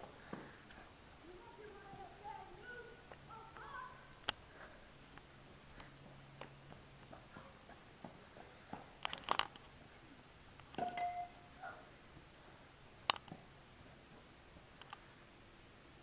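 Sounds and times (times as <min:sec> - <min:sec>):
doorbell chime: 0:10.8 - 0:11.5.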